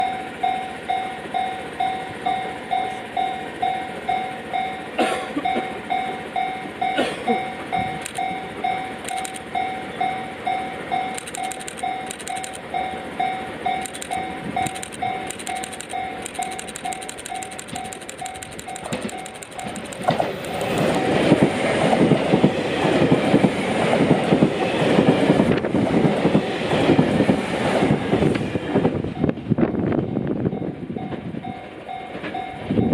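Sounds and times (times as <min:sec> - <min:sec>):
level crossing warning bell: 0:00.0 - 0:21.2, 0:30.1 - 0:32.9
train wheels clacking over rail joints: 0:07.7 - 0:08.4, 0:11.1 - 0:12.6, 0:13.8 - 0:29.5.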